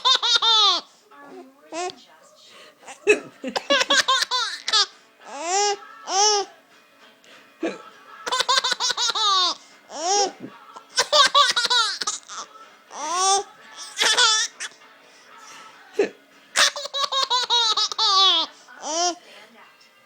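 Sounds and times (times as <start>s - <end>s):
baby laughing: 0.0s - 0.9s, 2.8s - 6.5s, 7.6s - 14.8s, 15.9s - 19.2s.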